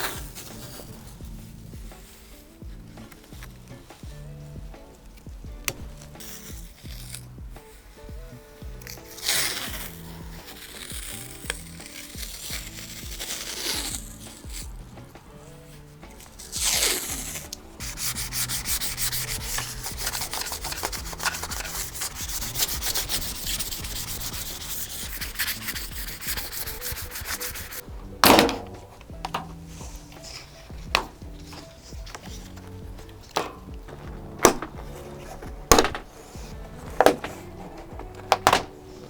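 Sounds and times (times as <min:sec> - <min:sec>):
sandpaper rasping on metal panel: 0:09.1 - 0:14.7, 0:16.4 - 0:38.7
loud sweeping scrape: 0:17.1 - 0:27.9.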